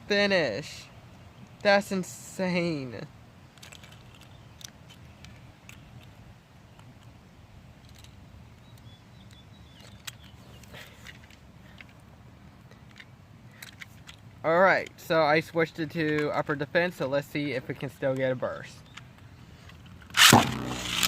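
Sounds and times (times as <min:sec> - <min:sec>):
low background noise: 0:00.0 - 0:21.0
plastic parts clicking: 0:03.6 - 0:07.2, 0:07.8 - 0:12.0, 0:12.7 - 0:14.2, 0:15.9 - 0:16.5, 0:18.1 - 0:21.0.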